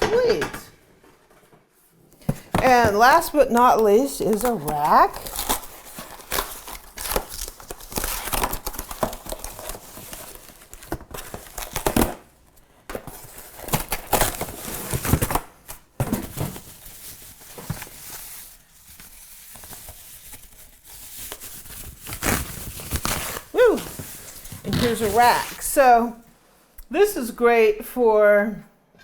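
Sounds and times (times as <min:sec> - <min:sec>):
packaging crinkling and rustling: 0:02.2 - 0:26.0
packaging tearing: 0:03.1 - 0:12.4, 0:13.0 - 0:25.8.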